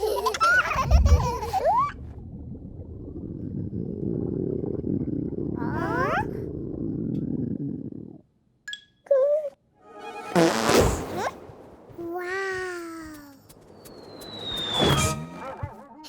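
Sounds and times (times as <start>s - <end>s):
low rough purr-like rumble: 1.3s - 8.3s.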